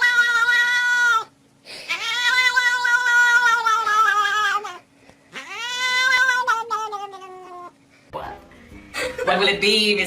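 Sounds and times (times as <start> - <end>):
cat yowling: 0.0 - 7.8.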